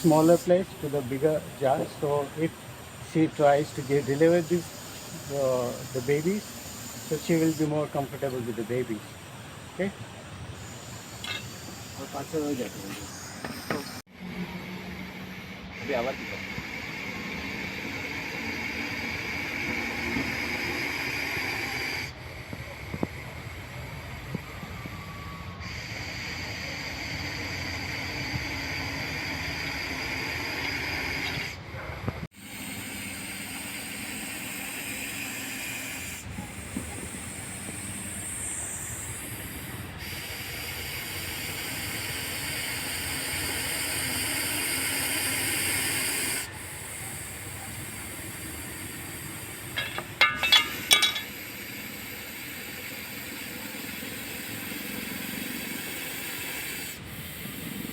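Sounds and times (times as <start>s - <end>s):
snake hissing: 0.0s - 57.9s.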